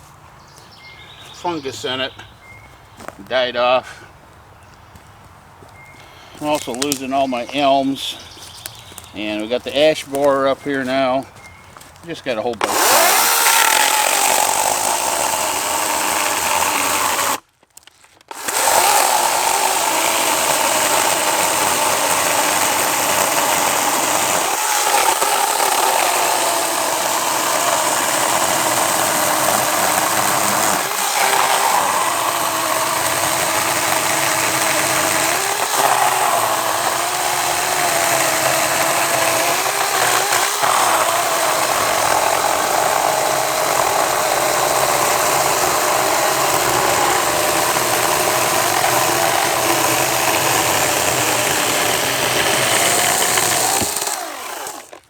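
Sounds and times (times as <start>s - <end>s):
electric chainsaw cutting log: 6.4s - 11.1s, 12.5s - 17.4s, 18.2s - 55.0s.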